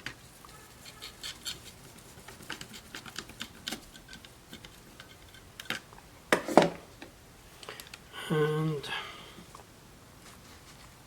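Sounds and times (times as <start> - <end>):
screw being driven: 0.5 - 1.8.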